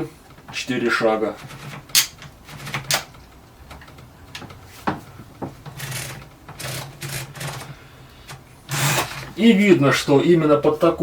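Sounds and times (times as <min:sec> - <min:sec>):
typewriter ratchet rasping: 0:01.4 - 0:03.1, 0:05.8 - 0:07.7, 0:08.7 - 0:09.3.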